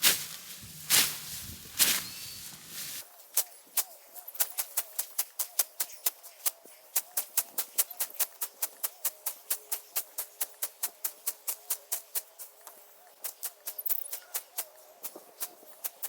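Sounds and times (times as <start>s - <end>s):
scythe swishing through grass: 0.0s - 5.2s.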